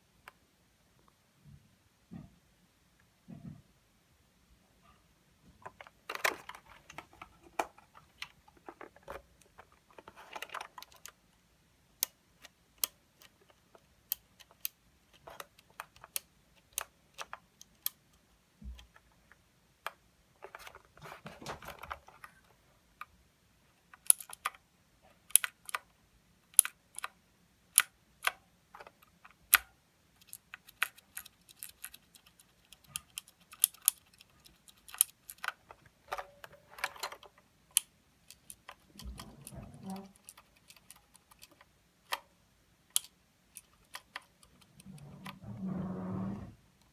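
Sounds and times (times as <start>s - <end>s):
clicky mechanical keyboard typing: 5.6s - 11.2s, 24.0s - 24.6s, 27.8s - 42.2s, 42.9s - 45.4s.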